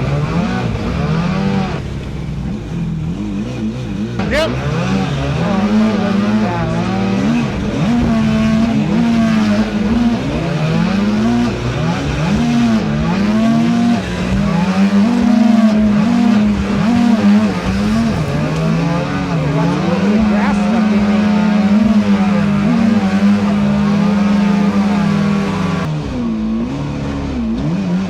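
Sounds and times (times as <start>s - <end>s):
boat motor running hard: 0.0s - 25.9s
rushing low rumble: 5.5s - 22.8s.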